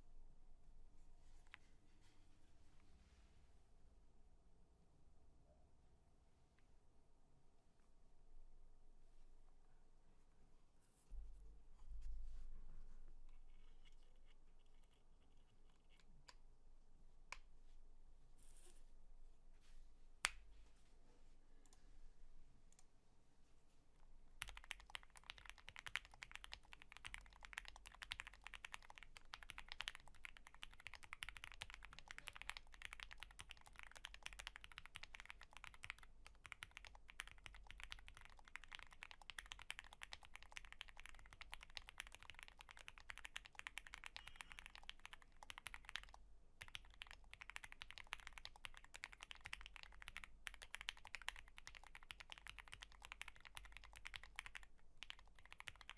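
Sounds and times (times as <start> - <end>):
fast typing on mechanical keyboard: 24.4 - 55.9.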